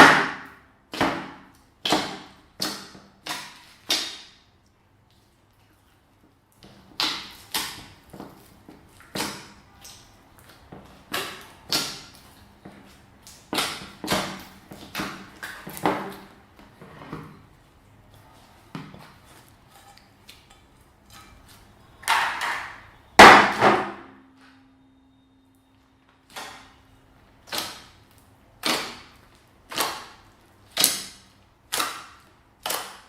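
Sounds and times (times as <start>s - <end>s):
slime squelching: 1.5s - 16.8s, 27.4s - 33.0s.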